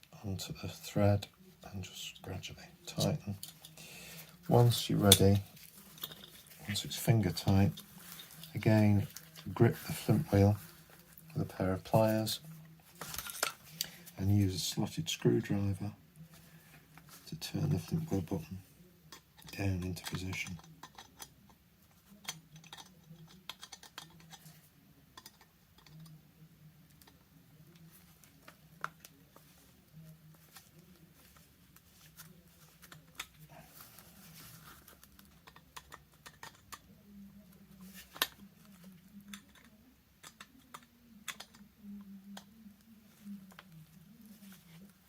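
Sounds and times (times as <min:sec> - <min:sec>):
faint low hum: 0:00.0 - 0:45.0
metallic clicks and taps of tools: 0:06.0 - 0:06.4.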